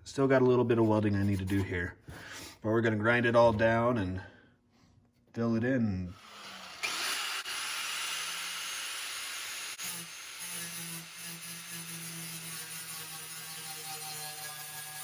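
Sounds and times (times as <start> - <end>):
angle grinder grinding metal: 6.2 - 15.0.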